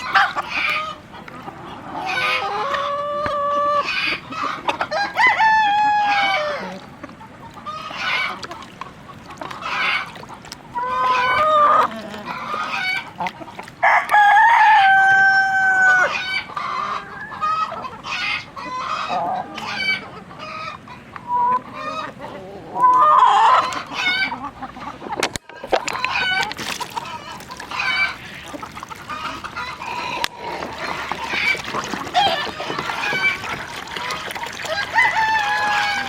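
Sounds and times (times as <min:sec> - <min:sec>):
chickens clucking: 0:00.0 - 0:36.0
rooster crowing: 0:04.9 - 0:06.7, 0:13.8 - 0:16.2, 0:34.6 - 0:36.0.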